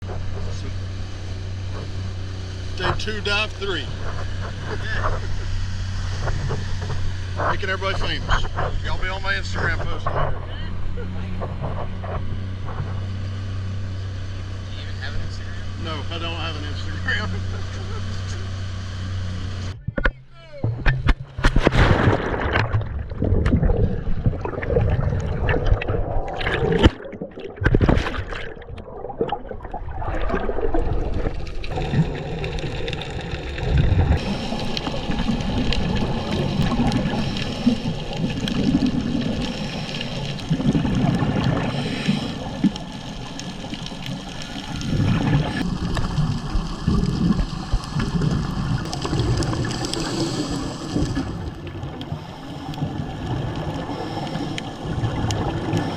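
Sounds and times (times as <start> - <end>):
water sloshing and gurgling: 0.0 - 55.9
underwater regulator bubbles: 21.0 - 55.9
underwater hiss: 34.2 - 55.9.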